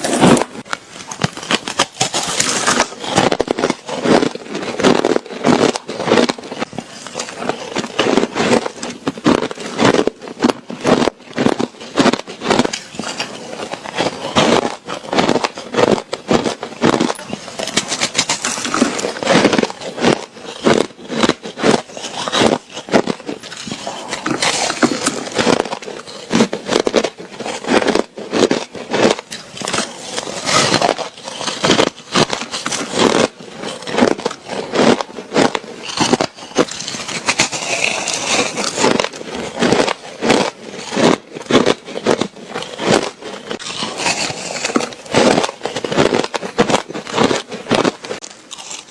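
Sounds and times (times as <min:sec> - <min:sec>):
ice being chewed: 0:00.0 - 0:48.9.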